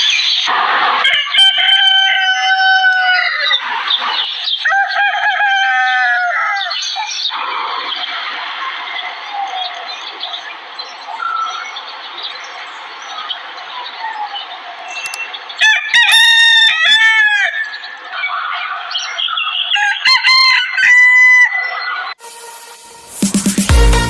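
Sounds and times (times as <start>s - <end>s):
rooster crowing: 1.0s - 3.6s, 4.6s - 6.8s, 15.6s - 17.9s, 19.7s - 22.2s
faint bird chirps: 14.9s - 15.4s
background hiss: 22.2s - 24.0s.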